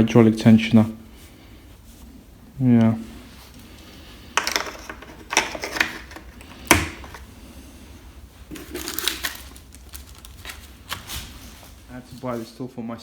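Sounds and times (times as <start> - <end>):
metal tools clicking and knocking: 4.4 - 7.2.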